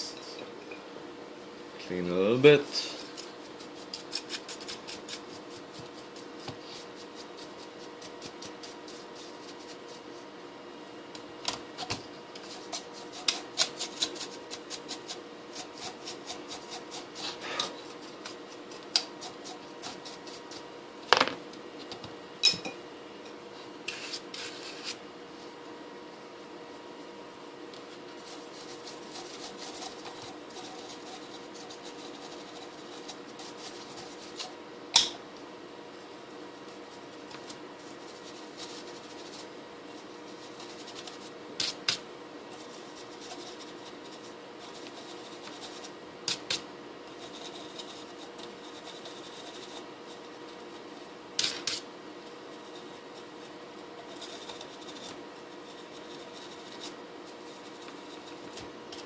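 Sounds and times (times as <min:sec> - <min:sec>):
rubbing and scratching handling noise: 0:02.6 - 0:10.3, 0:27.8 - 0:34.6, 0:36.1 - 0:46.0, 0:47.1 - 0:59.0.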